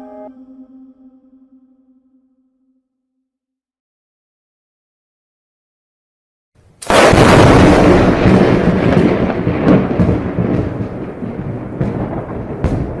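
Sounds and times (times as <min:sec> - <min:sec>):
sharp thunder crackles: 0:06.8 - 0:13.0
thunder crack and rumble: 0:06.9 - 0:13.0.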